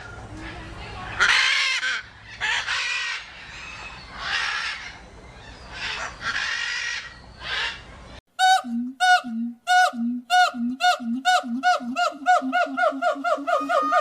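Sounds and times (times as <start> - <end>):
chickens calling: 1.2 - 14.0.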